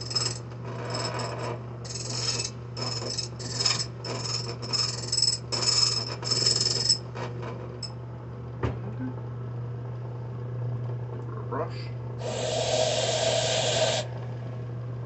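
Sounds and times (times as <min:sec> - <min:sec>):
machine motor humming: 0:12.2 - 0:14.4.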